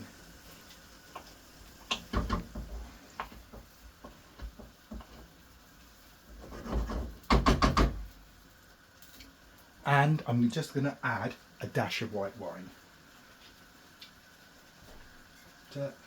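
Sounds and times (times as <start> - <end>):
spoon scraping and knocking pan: 1.2 - 5.4, 6.3 - 8.0.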